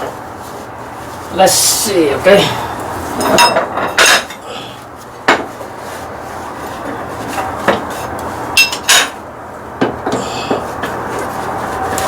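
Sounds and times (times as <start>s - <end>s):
metal tools clanking: 3.1s - 4.4s.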